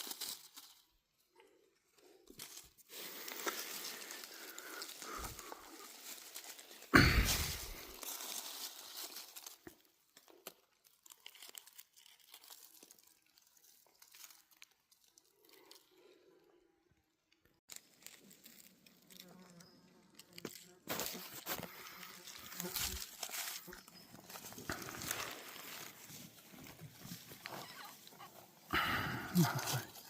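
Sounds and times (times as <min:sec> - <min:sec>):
dry leaves crunching and rustling: 0:00.0 - 0:01.0, 0:02.3 - 0:15.8, 0:17.7 - 0:19.6, 0:20.4 - 0:30.0
loud close leaf crunch: 0:02.4 - 0:09.8, 0:20.4 - 0:28.0.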